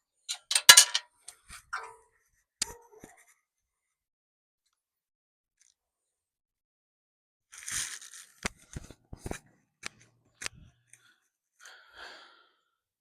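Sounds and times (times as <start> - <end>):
rustling and scraping: 7.5 - 10.7.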